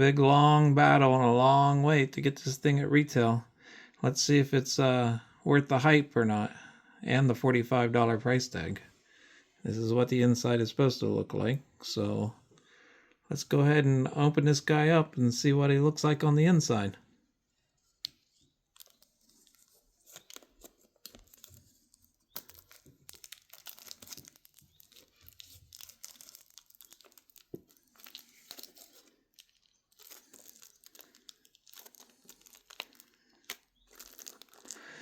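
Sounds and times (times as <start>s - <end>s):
plastic wrap crinkling and tearing: 17.8s - 35.0s.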